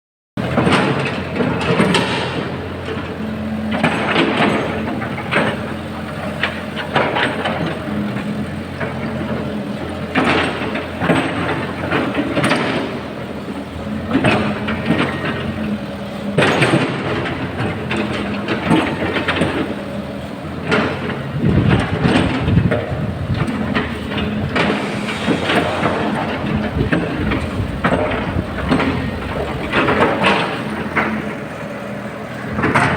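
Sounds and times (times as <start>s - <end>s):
excavator diesel engine running: 0.4s - 32.9s
metallic clanks and scraping: 22.0s - 31.4s.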